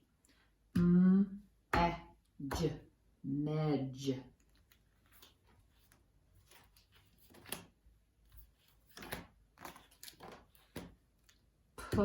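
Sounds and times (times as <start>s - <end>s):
cards tapping and rustling on table: 5.0s - 12.0s.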